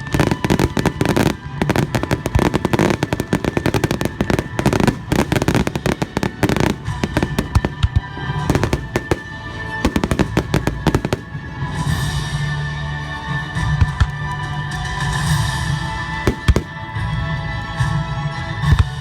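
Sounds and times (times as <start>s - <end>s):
firework bursts: 0.0s - 12.0s, 16.3s - 16.9s
music: 0.0s - 19.0s.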